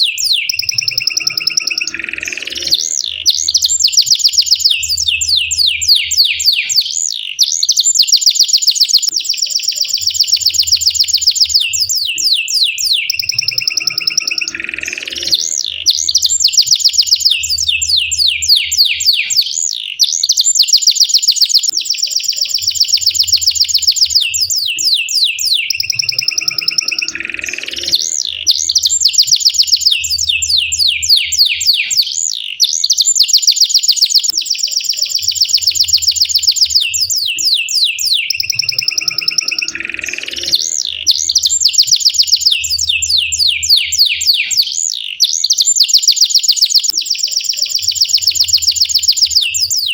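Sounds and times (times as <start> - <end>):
canary singing trills: 0.0 - 49.9.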